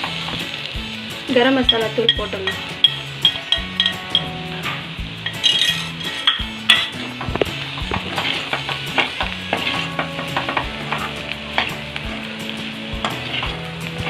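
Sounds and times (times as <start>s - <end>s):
stir-fry sizzling in a pan: 0.0s - 14.0s
spoon stirring and scraping: 2.1s - 4.3s, 5.2s - 11.7s.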